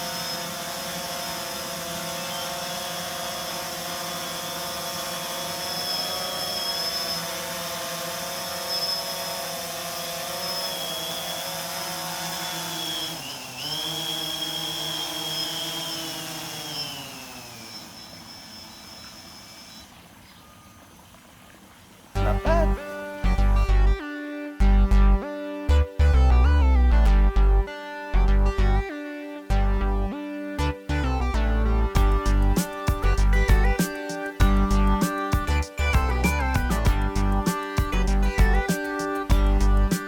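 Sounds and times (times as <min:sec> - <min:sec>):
drone propellers whining: 0:00.0 - 0:21.2, 0:31.4 - 0:40.0.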